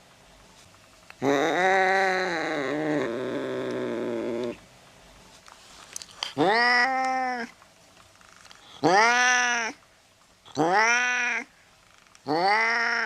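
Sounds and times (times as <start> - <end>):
cat meowing: 6.4 - 7.5, 8.8 - 9.8, 10.5 - 11.5, 12.3 - 13.0.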